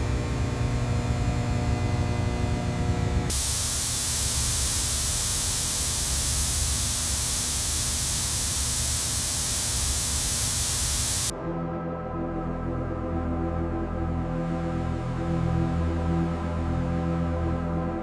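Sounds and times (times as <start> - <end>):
humming tone: 3.3 - 11.3
loud spraying hiss: 3.3 - 11.3.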